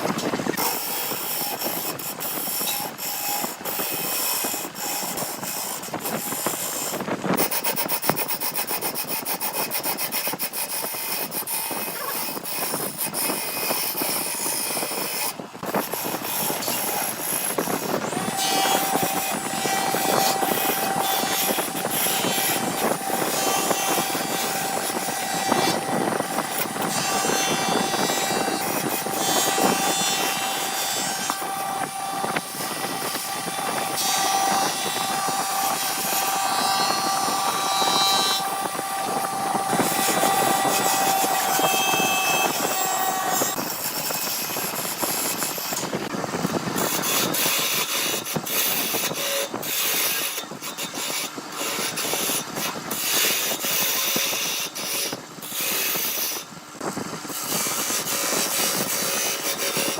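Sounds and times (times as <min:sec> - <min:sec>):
tool scraping wood: 0:00.0 - 0:59.9
wood lathe motor whine: 0:00.0 - 0:59.9.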